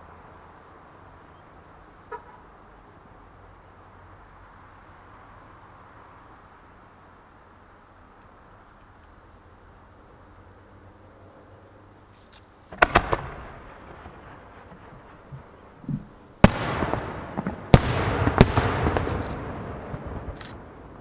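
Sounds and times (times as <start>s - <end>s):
small firework pops: 12.7s - 13.6s, 15.3s - 20.7s
firework shells bursting: 12.7s - 20.7s.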